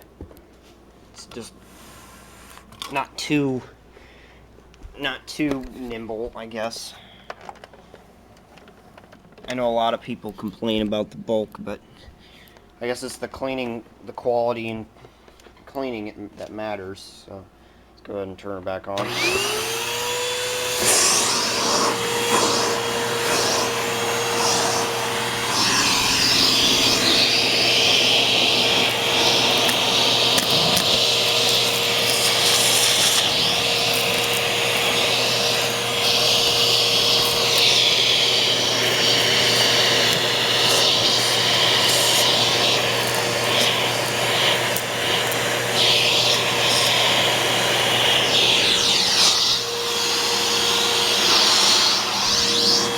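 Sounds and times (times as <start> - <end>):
vacuum cleaner motor whining: 19.0 - 52.9
rushing air: 20.8 - 52.9.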